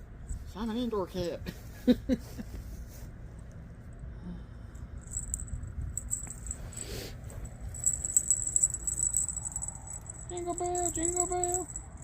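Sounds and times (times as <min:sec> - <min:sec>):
low steady rumble: 0:00.0 - 0:12.0
small bell jingling: 0:04.8 - 0:12.0.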